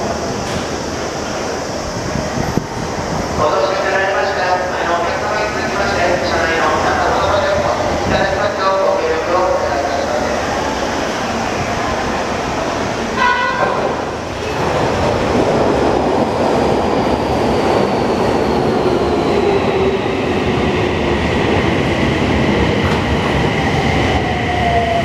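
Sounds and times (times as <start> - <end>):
train running noise: 0.0 - 25.0
train horn blast: 13.2 - 14.0.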